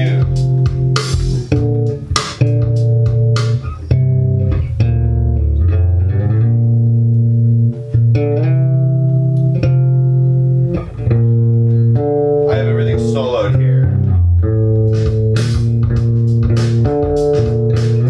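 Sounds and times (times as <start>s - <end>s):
electric bass notes: 0.0s - 18.0s.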